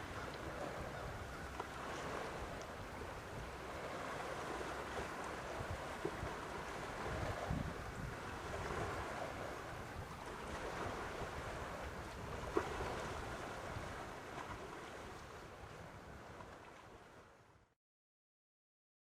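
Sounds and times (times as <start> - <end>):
wind buffeting microphone: 0.0 - 14.6
lake water lapping: 0.0 - 17.5.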